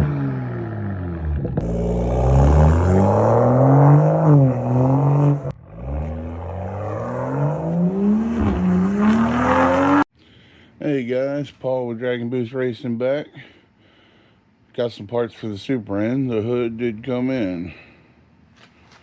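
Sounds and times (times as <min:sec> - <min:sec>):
car engine accelerating hard: 0:00.0 - 0:10.0.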